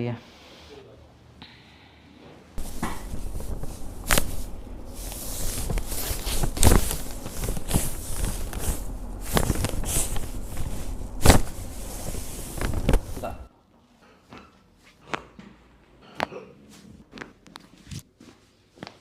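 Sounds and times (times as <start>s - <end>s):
clothing rustling: 2.6s - 13.5s.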